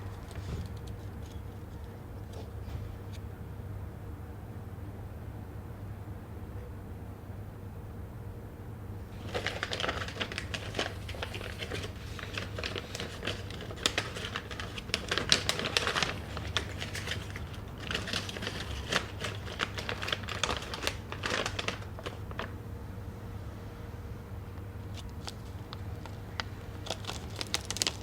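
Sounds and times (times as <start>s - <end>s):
plastic packaging crinkling: 9.2s - 22.6s, 24.8s - 28.0s.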